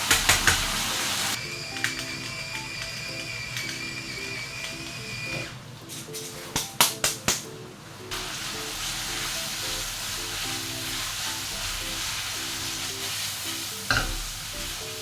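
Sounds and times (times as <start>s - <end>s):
shrimp sizzling in frying pan: 0.0s - 2.8s, 8.0s - 15.0s
background music: 0.0s - 15.0s.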